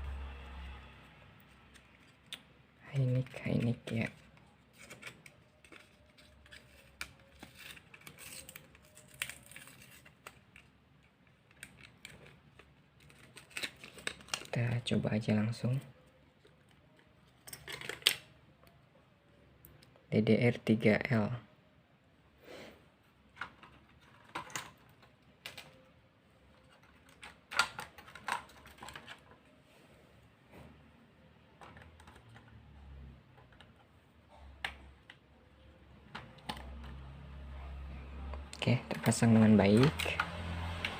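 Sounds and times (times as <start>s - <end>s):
packaging rustling and crinkling: 1.4s - 15.0s, 26.6s - 29.6s.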